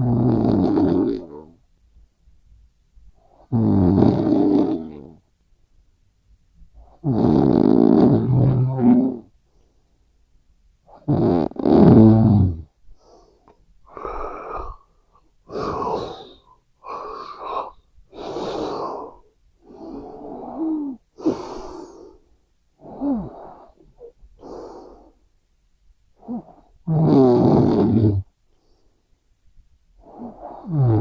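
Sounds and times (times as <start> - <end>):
wheezy sleeping breaths: 12.9 - 25.2, 30.0 - 31.0.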